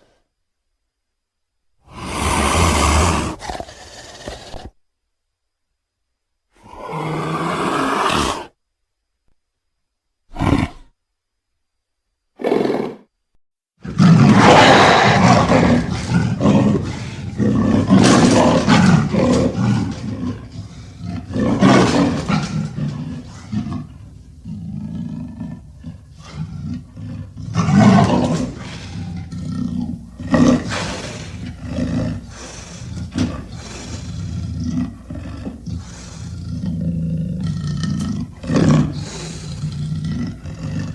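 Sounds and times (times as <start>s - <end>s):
animal roaring calls: 1.8s - 4.7s, 6.6s - 8.5s, 10.3s - 10.9s, 13.8s - 40.9s.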